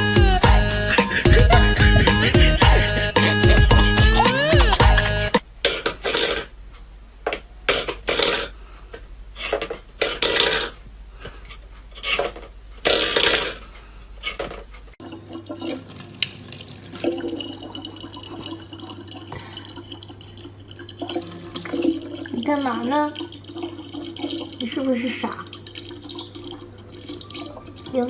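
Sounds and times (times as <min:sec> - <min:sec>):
tap water splashing into sink: 0:15.0 - 0:27.9.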